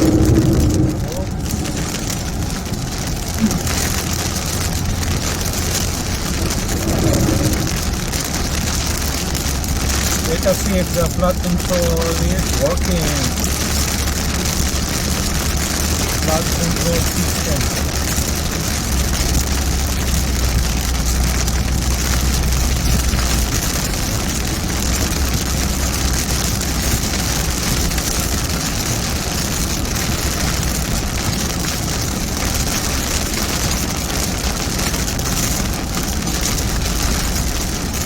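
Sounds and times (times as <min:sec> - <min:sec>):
car engine and tyres rumbling: 0:00.0 - 0:38.0
hiss of heavy rain: 0:00.0 - 0:38.0.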